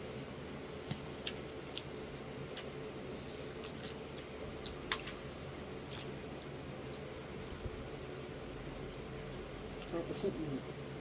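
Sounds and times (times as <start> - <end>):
wet chewing mouth clicks: 0.9 - 7.2.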